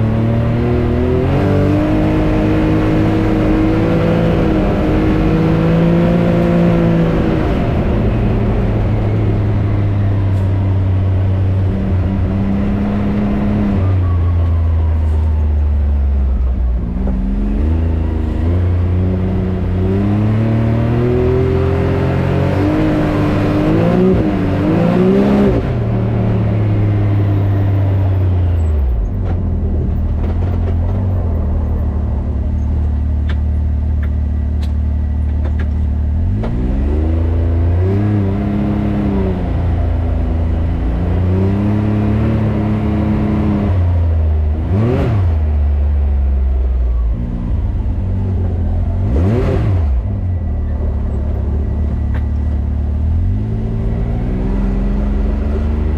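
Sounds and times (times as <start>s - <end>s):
turbocharged engine revving: 0.0s - 14.2s, 16.8s - 34.7s, 36.1s - 55.9s.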